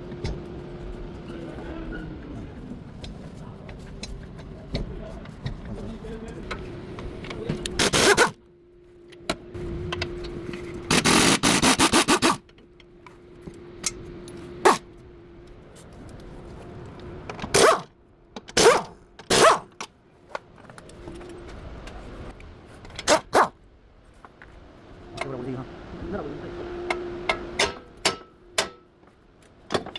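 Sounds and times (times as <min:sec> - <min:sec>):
metallic tool bursts: 0:10.9 - 0:12.4.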